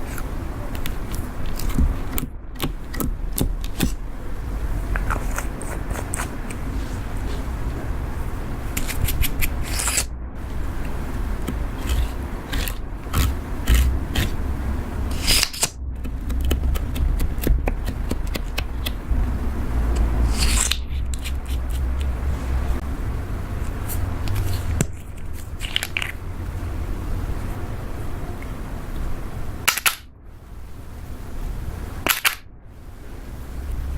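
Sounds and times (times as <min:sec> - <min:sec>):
slime scraping: 0:00.0 - 0:19.1, 0:19.9 - 0:22.8, 0:23.6 - 0:26.2
slime clicking and crackling: 0:00.1 - 0:04.0, 0:08.7 - 0:14.4, 0:15.1 - 0:19.1.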